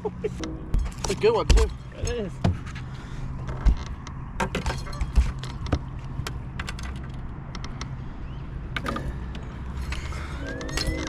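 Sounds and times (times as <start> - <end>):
steady low hum: 0.0 - 11.0
fishing tackle clicking and rattling: 8.8 - 11.0.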